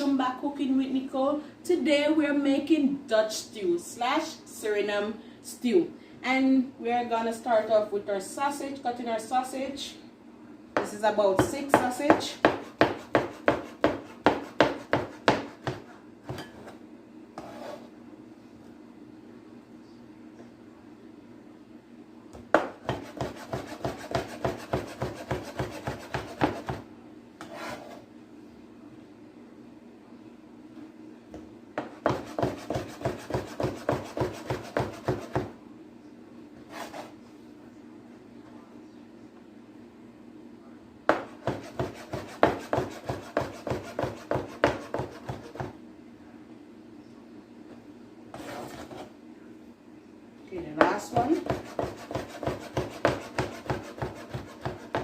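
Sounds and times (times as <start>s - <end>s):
knife scraping board: 17.4s - 18.0s, 22.8s - 26.8s, 27.4s - 28.1s, 31.8s - 35.5s, 36.6s - 37.2s, 41.1s - 45.7s, 48.3s - 49.1s, 50.8s - 55.0s
knife slicing on cutting board: 27.4s - 28.0s.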